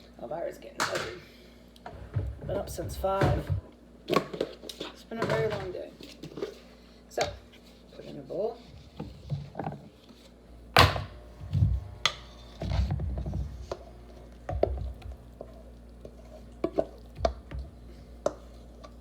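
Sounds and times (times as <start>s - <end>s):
utensil scraping a bowl: 11.8s - 19.0s.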